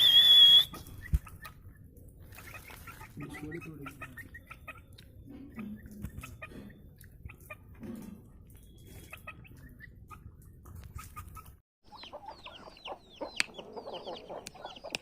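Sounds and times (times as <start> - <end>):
chickens clucking low: 9.1 - 15.0.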